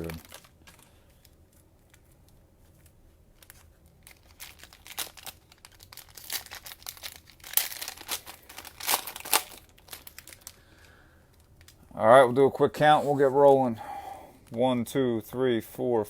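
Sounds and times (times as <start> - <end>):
plastic wrapping crinkling: 0.0 - 12.6.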